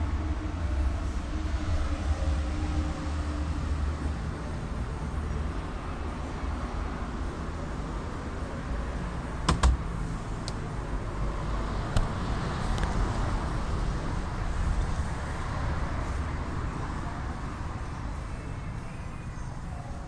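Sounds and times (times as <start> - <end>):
refrigerator humming: 9.0 - 13.2
sharp clicks: 9.5 - 10.6.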